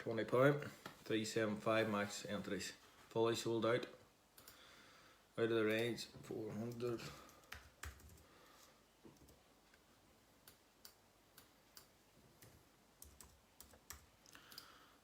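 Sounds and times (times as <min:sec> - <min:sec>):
room hiss: 0:00.0 - 0:15.0
computer mouse and keys clicking: 0:04.4 - 0:04.6, 0:06.7 - 0:08.3, 0:09.0 - 0:09.8, 0:10.4 - 0:14.8.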